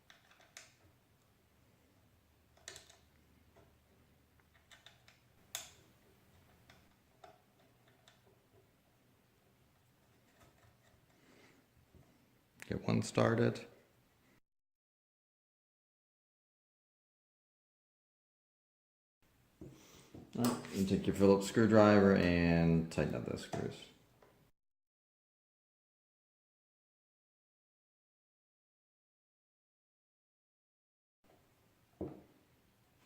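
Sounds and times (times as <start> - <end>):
small screws clicking: 0.0 - 0.9, 4.4 - 8.4.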